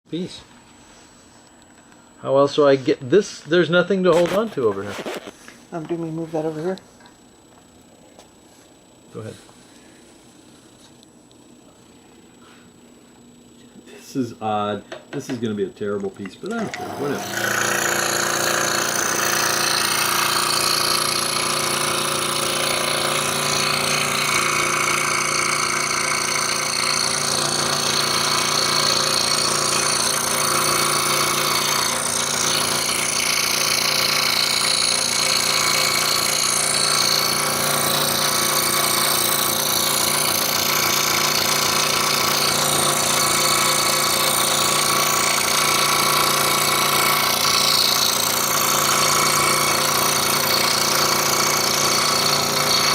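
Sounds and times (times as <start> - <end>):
scroll saw cutting wood: 16.5 - 52.9.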